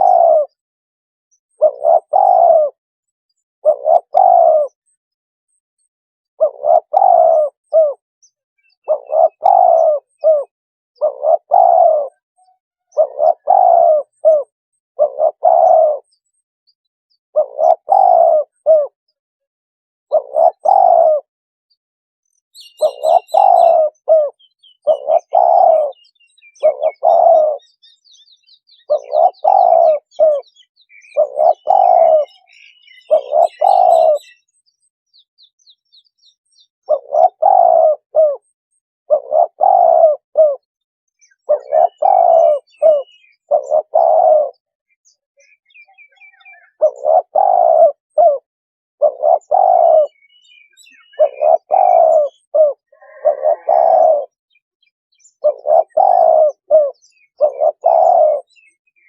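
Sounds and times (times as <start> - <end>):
dove cooing: 0.0 - 0.6, 1.5 - 2.8, 3.6 - 4.9, 6.4 - 8.0, 8.6 - 16.2, 17.4 - 19.0, 20.1 - 21.3, 22.6 - 34.5, 36.8 - 54.4, 55.2 - 59.0
small birds chirping faintly: 22.2 - 59.0.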